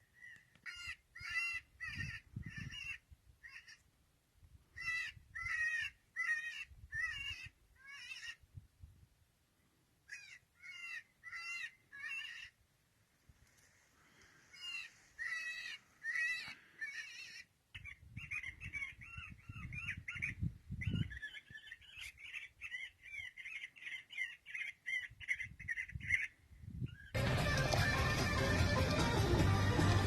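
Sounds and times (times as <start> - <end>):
harsh crow-like bird calls: 0.2 - 3.8, 4.8 - 8.4, 10.1 - 12.6, 14.5 - 19.2.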